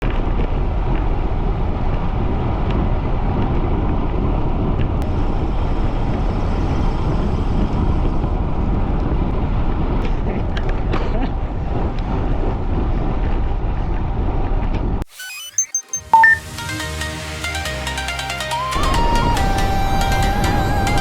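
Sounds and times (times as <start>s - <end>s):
wind and road noise: 0.0s - 15.0s.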